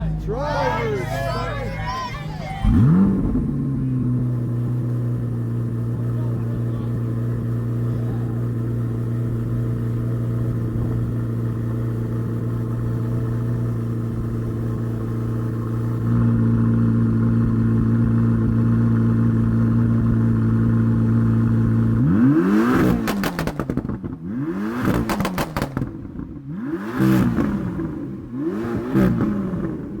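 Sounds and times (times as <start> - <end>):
car engine idling: 0.0 - 30.0
engine revving in blips: 2.5 - 4.9, 21.9 - 30.0.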